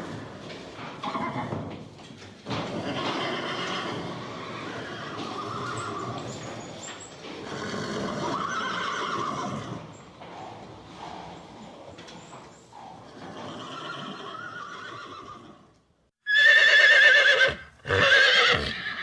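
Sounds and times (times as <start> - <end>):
horse neighing: 1.0 - 1.6, 2.7 - 10.1, 12.8 - 19.0.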